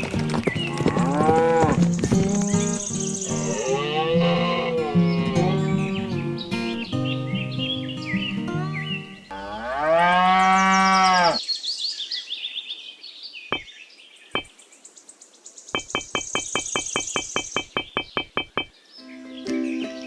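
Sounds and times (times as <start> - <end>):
music: 0.0 - 9.3, 19.0 - 20.0
cow mooing: 0.7 - 1.8, 3.2 - 5.8, 9.3 - 11.4
high chirps: 1.9 - 9.2, 15.8 - 18.7.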